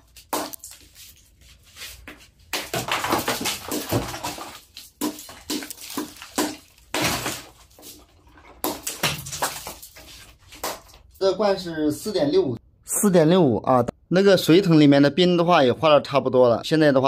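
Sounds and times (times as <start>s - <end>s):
water splashing in a bucket: 2.7s - 10.9s.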